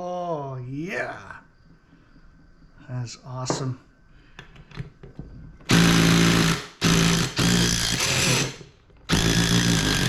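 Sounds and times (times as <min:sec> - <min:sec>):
impact driver whining and hammering: 0:05.6 - 0:10.0.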